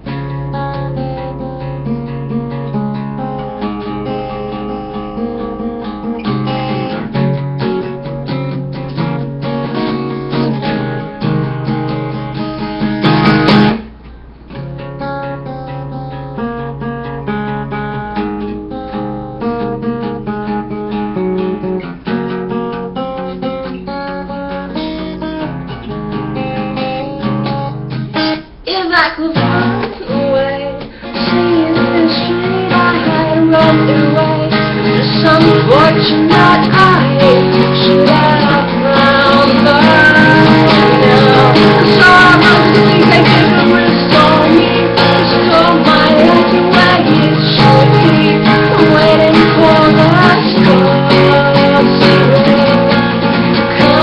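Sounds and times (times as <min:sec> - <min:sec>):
acoustic guitar chords: 0:00.0 - 0:54.0
sliding melody line: 0:31.2 - 0:54.0.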